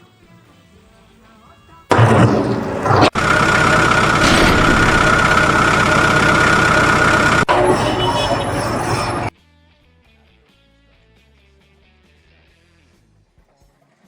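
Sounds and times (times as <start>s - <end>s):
machine whining loudly: 1.9s - 9.3s.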